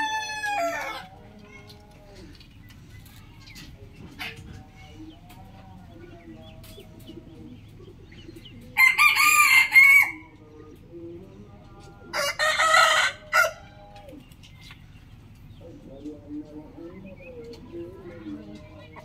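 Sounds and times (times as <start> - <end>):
rooster crowing: 0.0 - 1.1, 8.8 - 10.3, 12.2 - 13.8.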